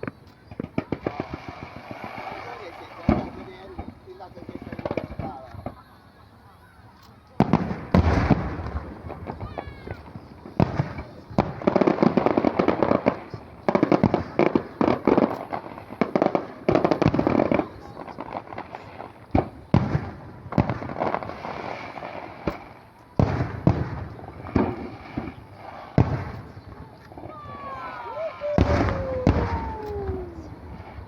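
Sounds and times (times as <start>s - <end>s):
fireworks bangs and crackling: 0.0s - 31.0s
firework shell bursts booming: 7.4s - 26.9s.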